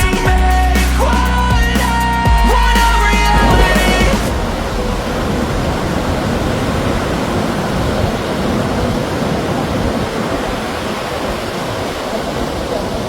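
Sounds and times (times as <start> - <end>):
wind: 2.1 - 13.0
surf rushing: 2.6 - 13.0.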